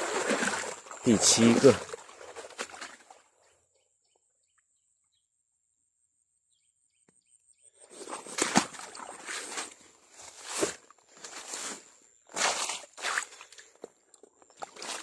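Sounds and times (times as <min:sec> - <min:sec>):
splashing steps through mud: 0:00.0 - 0:03.3, 0:07.9 - 0:15.0.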